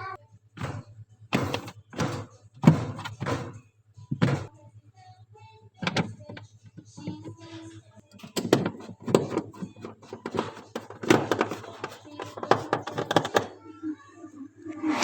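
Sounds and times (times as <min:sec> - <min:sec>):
knocks and scrapes of hard objects: 0:00.6 - 0:04.5, 0:05.8 - 0:13.6.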